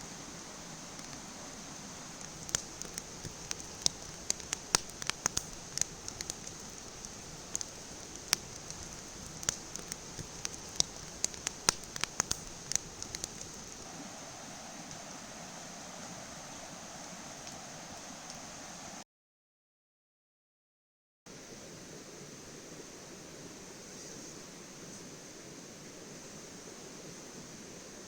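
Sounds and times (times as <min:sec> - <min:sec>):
campfire crackling: 0:00.0 - 0:19.0
steady background hiss: 0:00.0 - 0:19.0, 0:21.3 - 0:28.0.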